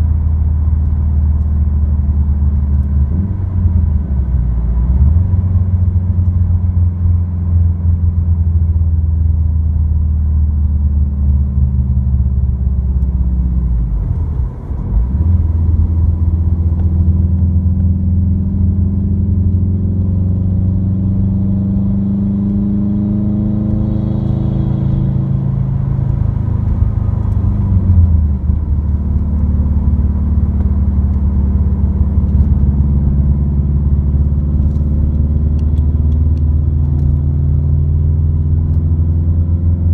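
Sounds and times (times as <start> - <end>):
car engine drone in cabin: 0.0 - 39.9.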